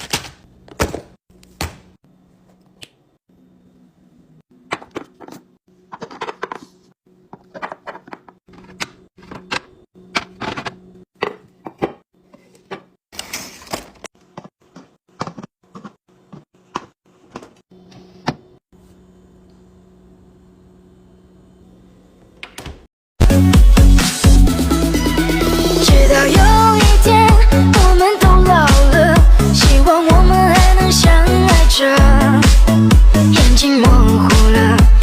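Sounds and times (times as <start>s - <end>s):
food containers clacking and knocking: 4.7s - 6.7s, 7.3s - 13.0s.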